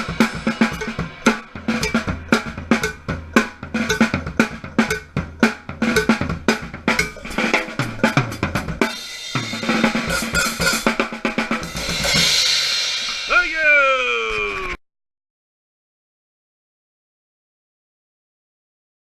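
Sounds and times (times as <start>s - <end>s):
loud cymbal crash: 0.0s - 3.2s, 8.9s - 13.3s
snare and bass drum hits: 0.0s - 12.3s
cymbals washing: 0.0s - 13.3s.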